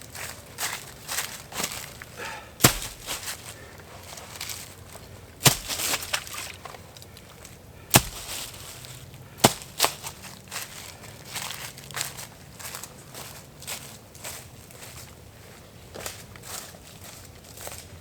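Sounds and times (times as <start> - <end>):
rustling in leaf litter: 0.0 - 15.5
dry sticks snapping: 2.1 - 3.6, 5.4 - 10.2.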